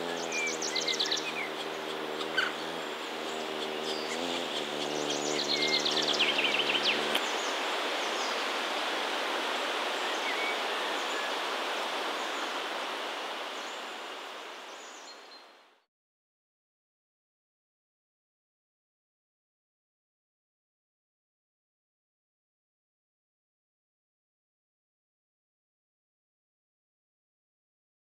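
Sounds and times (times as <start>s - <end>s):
short high bird calls: 0.0s - 2.7s
steady background hiss: 0.0s - 15.8s.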